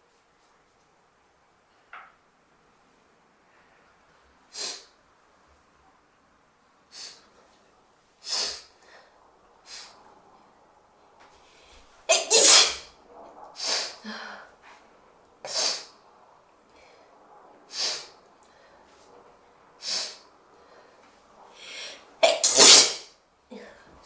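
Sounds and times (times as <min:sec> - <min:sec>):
noisy bursts of breath: 0:06.9 - 0:07.4, 0:08.2 - 0:10.1, 0:11.4 - 0:12.9, 0:13.6 - 0:14.5, 0:15.4 - 0:16.0, 0:16.7 - 0:19.0, 0:19.8 - 0:23.0
person sneezing: 0:12.1 - 0:12.8, 0:22.2 - 0:23.1.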